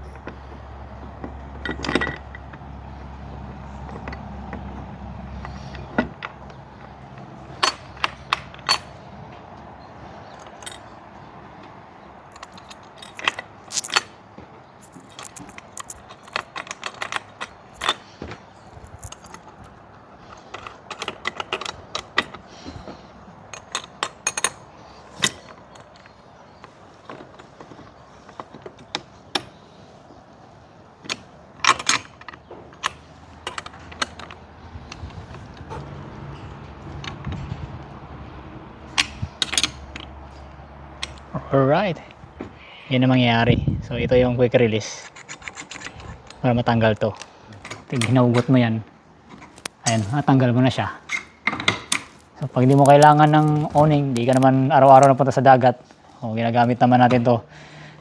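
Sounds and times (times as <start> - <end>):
metal bracket parts clicking: 5.4 - 9.0, 12.3 - 14.2, 14.8 - 29.9, 30.9 - 37.8, 38.8 - 41.3, 44.9 - 48.6, 51.0 - 56.0.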